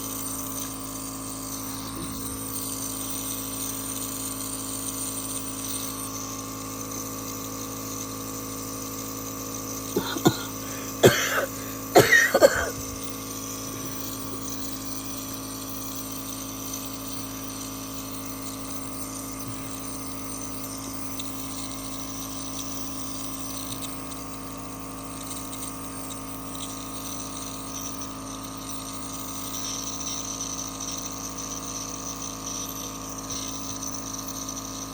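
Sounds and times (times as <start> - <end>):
steady background hum: 9.5 - 30.3
person coughing: 9.9 - 13.0.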